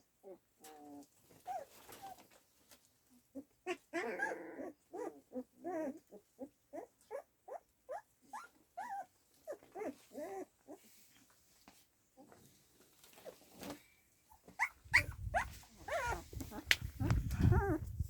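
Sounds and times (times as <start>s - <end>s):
dog whining: 3.7s - 6.1s, 6.7s - 10.5s, 14.6s - 17.8s.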